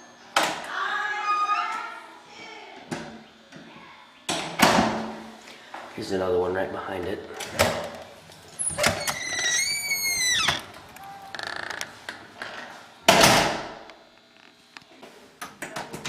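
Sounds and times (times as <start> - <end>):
door clicks and high squeak: 8.6 - 11.8
door closing with loud thud: 13.1 - 13.8.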